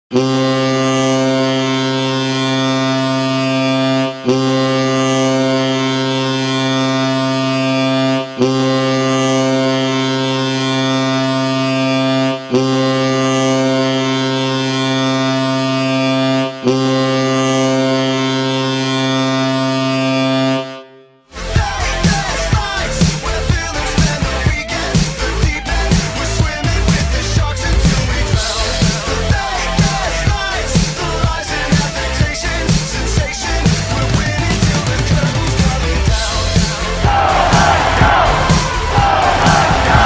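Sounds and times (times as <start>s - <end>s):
low air horn blasts: 0.1s - 23.3s, 33.4s - 40.0s.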